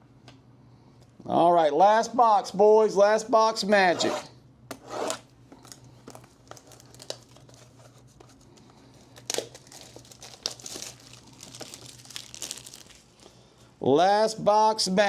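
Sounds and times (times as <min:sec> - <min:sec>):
plastic shrink wrap crinkling: 0:05.6 - 0:13.5.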